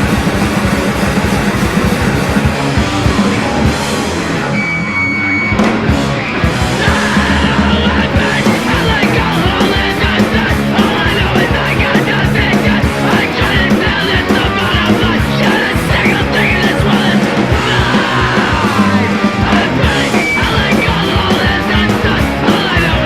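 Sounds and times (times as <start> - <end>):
punk band playing: 0.0 - 23.0
shouted vocals: 6.7 - 23.0.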